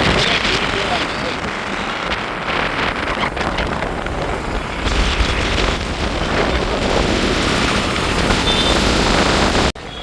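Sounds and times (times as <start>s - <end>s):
road vehicle running rumble: 0.0s - 9.8s
wind buffeting microphone: 0.0s - 9.8s.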